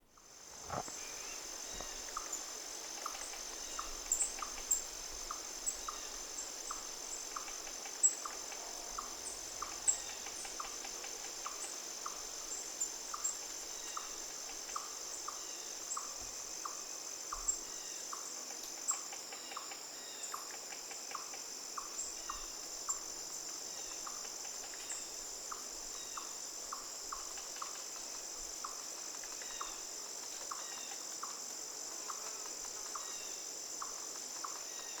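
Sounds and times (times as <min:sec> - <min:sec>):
low cricket chirps: 0:00.0 - 0:35.0
insects buzzing trill: 0:00.2 - 0:35.0.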